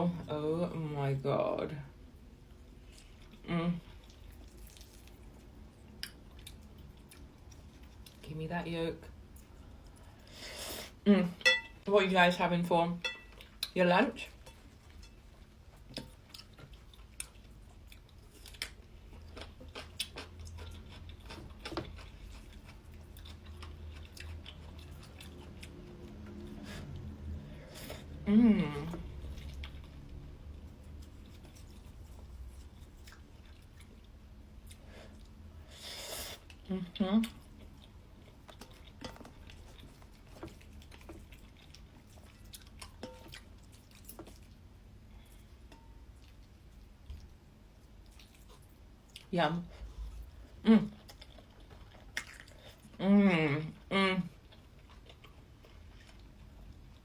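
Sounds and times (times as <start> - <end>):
low steady hum: 0.0 - 57.0
person chewing food: 2.6 - 8.2, 14.4 - 28.2, 28.9 - 35.4, 37.2 - 53.0, 54.4 - 57.0.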